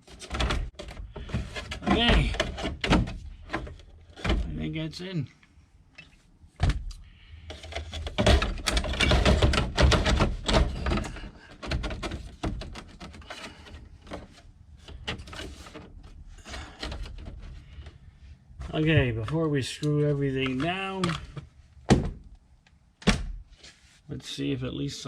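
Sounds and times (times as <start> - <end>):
plastic parts clicking and knocking: 0.0 - 4.5, 6.6 - 18.0, 20.4 - 23.2.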